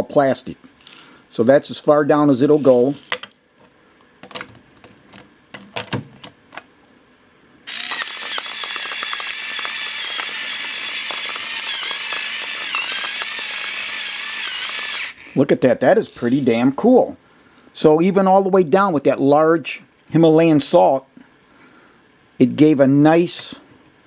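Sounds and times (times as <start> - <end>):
pepper mill motor grinding salt: 0.8 - 3.2, 7.7 - 15.4.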